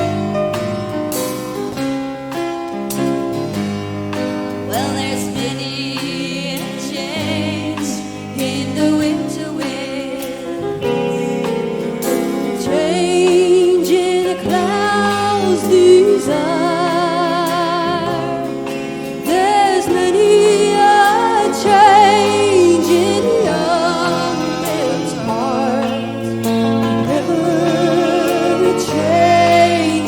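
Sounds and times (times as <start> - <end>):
country band playing live: 0.0 - 30.0
sliding lead melody: 10.9 - 30.0.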